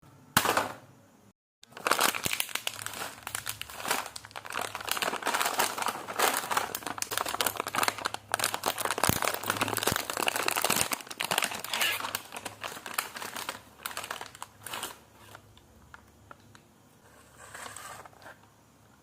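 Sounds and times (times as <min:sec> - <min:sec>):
plastic packet crinkling: 0:01.6 - 0:16.6.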